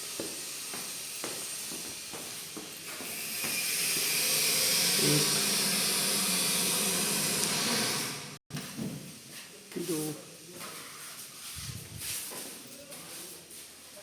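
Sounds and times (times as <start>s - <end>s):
loud steady hiss: 0.0s - 3.0s.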